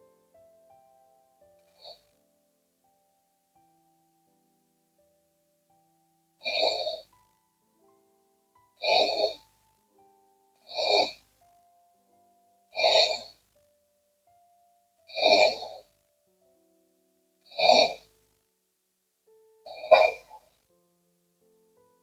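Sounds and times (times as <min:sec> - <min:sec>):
woman snoring: 0:06.4 - 0:07.1, 0:08.8 - 0:09.4, 0:10.7 - 0:11.2, 0:12.8 - 0:13.4, 0:15.1 - 0:15.8, 0:17.5 - 0:18.1, 0:19.7 - 0:20.4
soft melody of single notes: 0:09.4 - 0:15.1.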